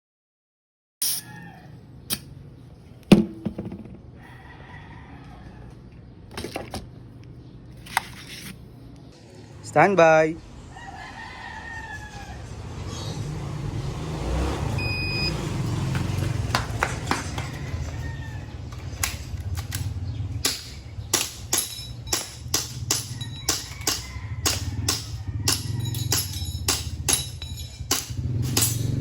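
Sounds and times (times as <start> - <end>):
sharp cracks: 18.8 - 29.0.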